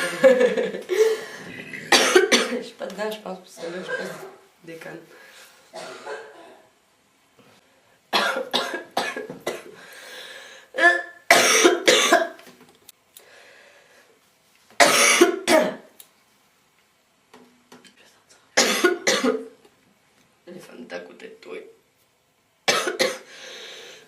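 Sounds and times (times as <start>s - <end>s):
girl coughing: 1.8s - 2.7s, 3.6s - 4.4s, 5.7s - 6.7s, 8.2s - 9.7s, 10.8s - 12.4s, 14.8s - 15.9s, 18.6s - 19.5s, 22.7s - 23.3s.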